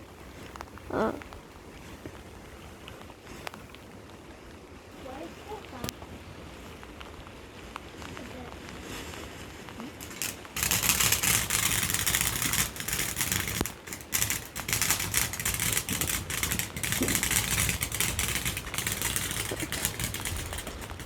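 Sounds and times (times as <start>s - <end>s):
firework fizzing and crackling: 0.0s - 21.0s.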